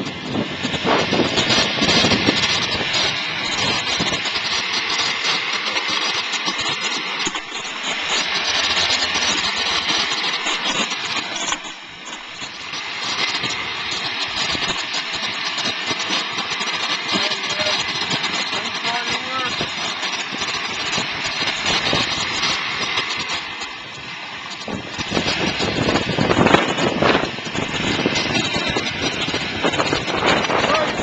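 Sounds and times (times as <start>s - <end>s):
dense rushing noise: 0.0s - 31.0s
motor scooter engine running: 6.5s - 12.2s.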